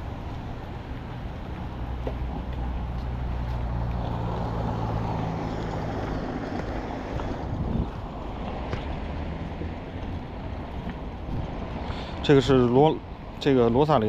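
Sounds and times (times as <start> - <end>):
traffic noise: 0.0 - 14.0.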